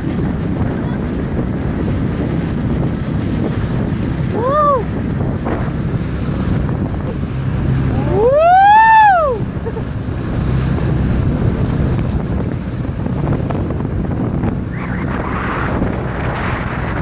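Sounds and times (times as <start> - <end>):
motorboat engine running: 0.0 - 17.0
wind buffeting microphone: 0.0 - 17.0
loud rising and falling cry: 4.3 - 4.9, 7.9 - 9.8.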